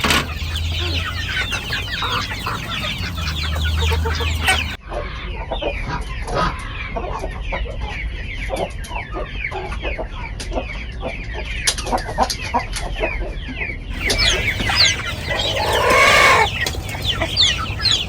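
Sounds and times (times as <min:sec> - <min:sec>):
chickens clucking and calling: 0:00.0 - 0:04.8, 0:13.9 - 0:18.0.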